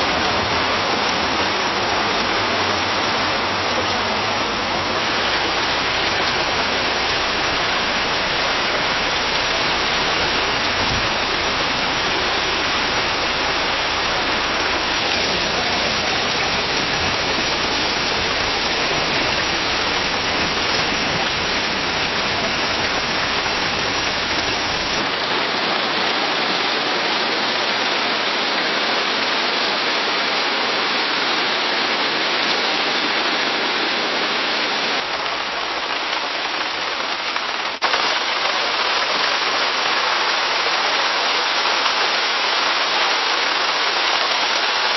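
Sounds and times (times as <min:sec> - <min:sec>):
rain falling in a forest: 0:00.0 - 0:44.9.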